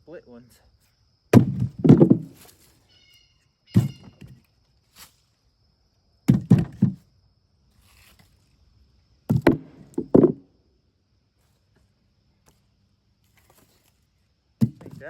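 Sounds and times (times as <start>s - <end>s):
firewood knocking: 1.3s - 2.5s, 3.8s - 4.4s, 6.3s - 7.0s, 9.3s - 10.4s, 14.6s - 15.0s.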